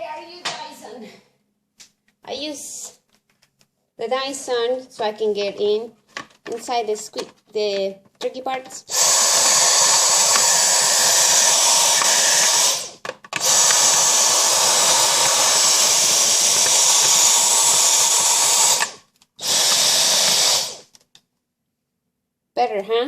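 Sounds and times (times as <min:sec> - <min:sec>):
cordless vacuum whining: 0:08.9 - 0:21.0.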